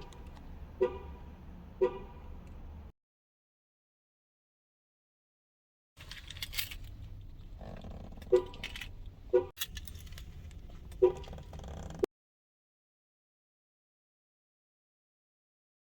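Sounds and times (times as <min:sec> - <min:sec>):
car horn honks: 0:00.0 - 0:02.5, 0:08.2 - 0:09.6, 0:10.9 - 0:11.5
keys jangling: 0:06.0 - 0:11.4.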